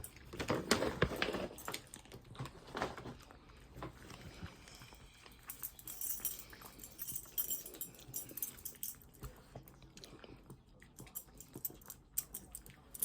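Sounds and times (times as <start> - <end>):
dog chewing a treat: 6.4 - 12.9.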